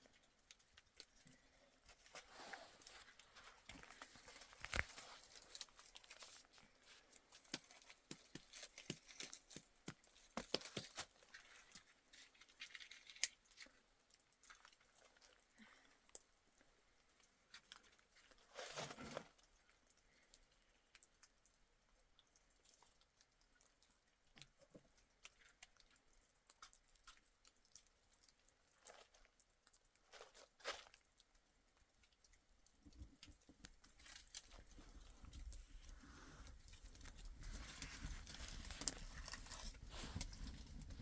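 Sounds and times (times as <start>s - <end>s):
rustling handling noises: 0.0s - 15.6s, 17.1s - 19.5s, 32.8s - 41.0s
faint clicks and crackles: 0.0s - 41.0s.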